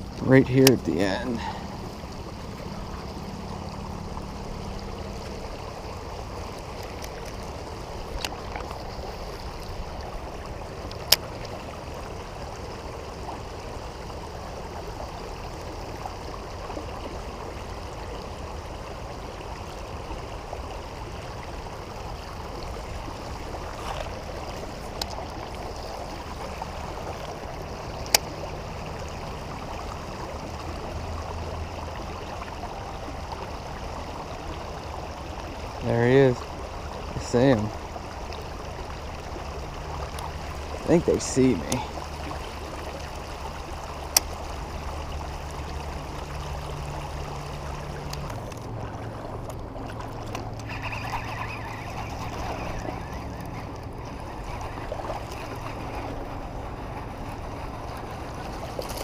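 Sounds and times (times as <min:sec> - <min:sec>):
river running over rocks: 0:00.0 - 0:59.0.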